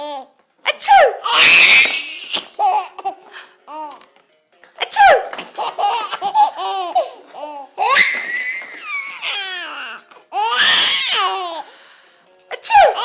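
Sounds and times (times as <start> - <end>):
baby laughing: 0.0 - 4.0, 4.8 - 11.6, 12.5 - 13.0
person sneezing: 4.8 - 5.3.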